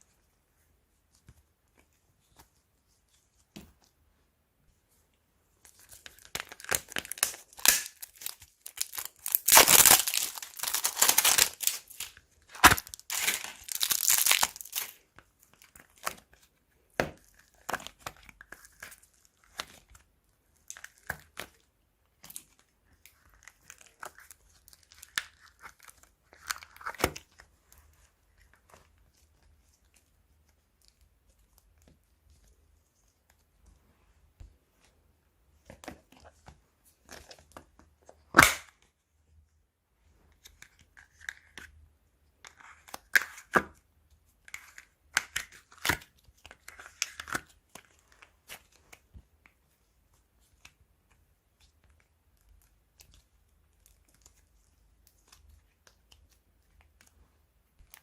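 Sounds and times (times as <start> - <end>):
crunchy slime crackling and popping: 5.9 - 15.0.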